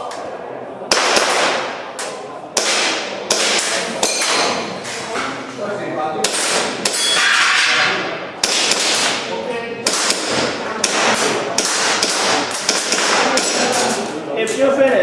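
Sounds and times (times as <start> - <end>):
airsoft pistol shots: 0.9 - 1.8, 2.6 - 4.6, 8.4 - 13.6.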